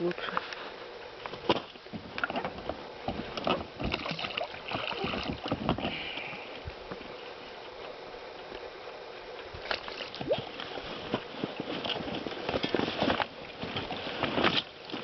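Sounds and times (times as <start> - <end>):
knocks and clatters in a boat: 1.3 - 7.1, 9.4 - 15.0.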